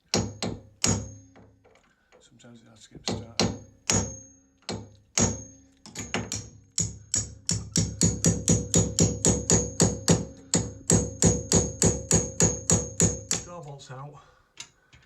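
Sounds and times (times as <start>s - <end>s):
hammer striking metal punch: 0.0s - 1.6s, 3.1s - 13.5s.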